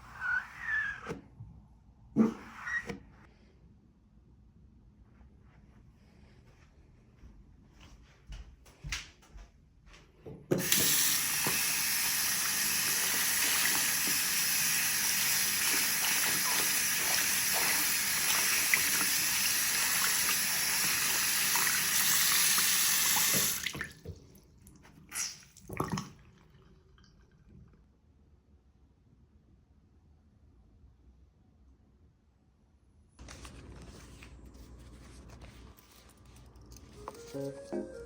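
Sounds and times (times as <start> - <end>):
running water: 10.5 - 27.1.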